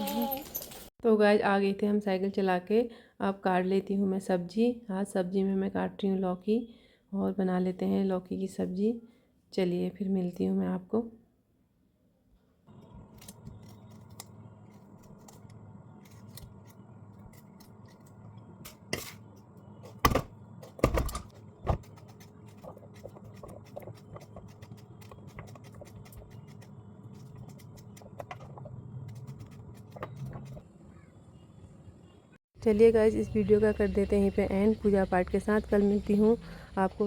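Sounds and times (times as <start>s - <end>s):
knife cutting vegetable: 21.6s - 28.2s.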